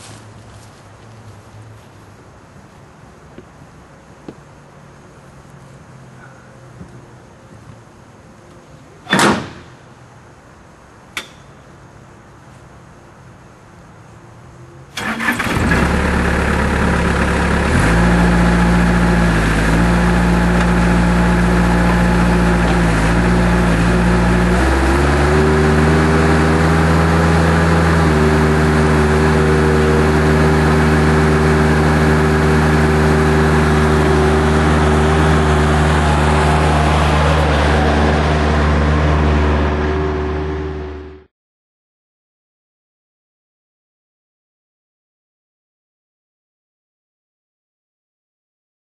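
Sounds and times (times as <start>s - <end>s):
diesel engine starting and running: 14.9s - 41.3s.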